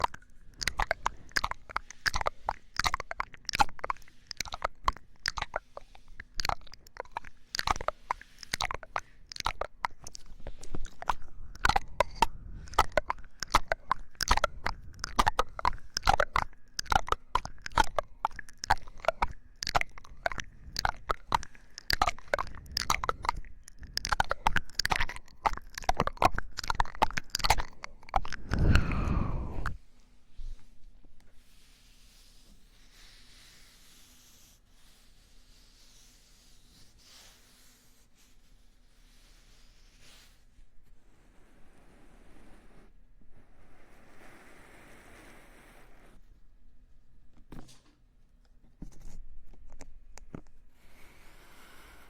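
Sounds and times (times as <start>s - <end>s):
popping candy crackling: 0.0s - 28.9s
wet mouth clicks: 0.0s - 29.8s.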